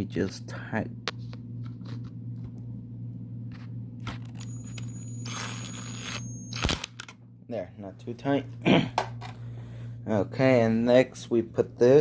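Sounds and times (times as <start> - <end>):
steady low hum: 0.0 - 12.0
power driver motor whine: 4.2 - 7.1.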